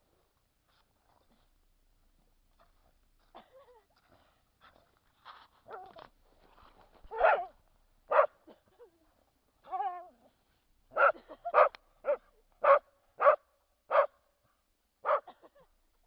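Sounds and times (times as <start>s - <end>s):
dog barking: 7.1s - 7.5s, 8.1s - 8.4s, 10.9s - 14.2s, 15.0s - 15.3s.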